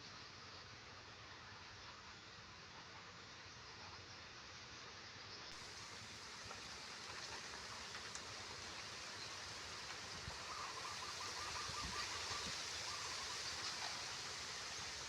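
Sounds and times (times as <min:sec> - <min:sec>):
outdoor hiss: 0:00.0 - 0:15.0
rapid trilling call: 0:10.3 - 0:15.0.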